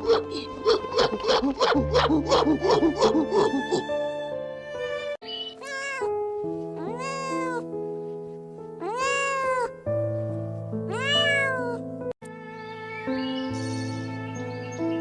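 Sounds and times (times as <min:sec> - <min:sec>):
background music: 0:00.0 - 0:15.0
cat meowing: 0:05.3 - 0:06.1, 0:06.8 - 0:07.7, 0:08.8 - 0:09.8, 0:10.9 - 0:11.8.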